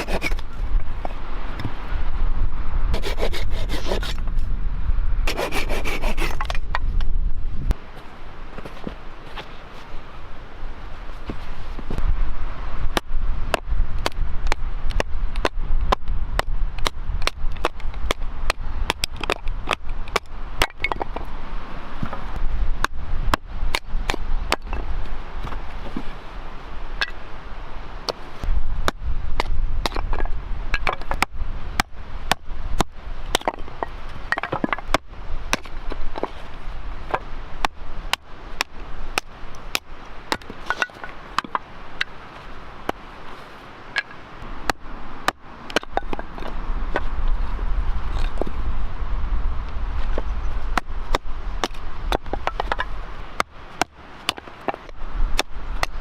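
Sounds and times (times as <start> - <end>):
axe chopping firewood: 12.9 - 21.3, 28.8 - 36.3, 37.1 - 42.1, 44.0 - 47.1, 50.1 - 56.0.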